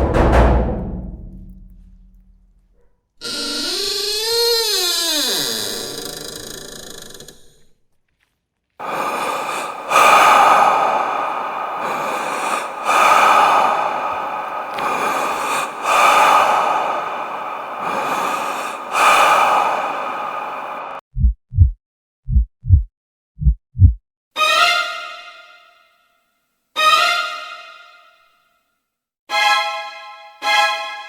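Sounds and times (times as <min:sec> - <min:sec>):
heavy slow breathing: 0:08.8 - 0:21.0.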